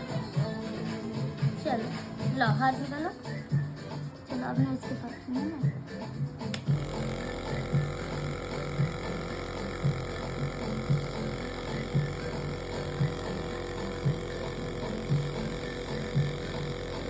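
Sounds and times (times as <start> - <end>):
nebulizer compressor humming: 4.9 - 17.0
low pulse: 6.6 - 17.0.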